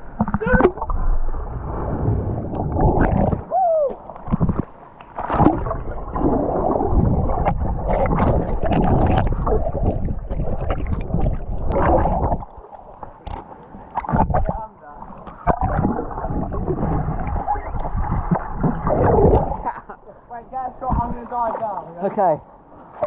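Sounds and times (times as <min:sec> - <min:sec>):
sharp water splashes: 0:02.5 - 0:19.8.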